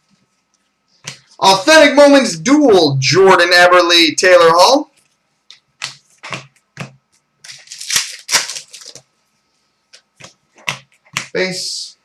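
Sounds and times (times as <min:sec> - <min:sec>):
cards flicking and snapping: 0:05.5 - 0:09.0
card rustle: 0:07.4 - 0:09.1.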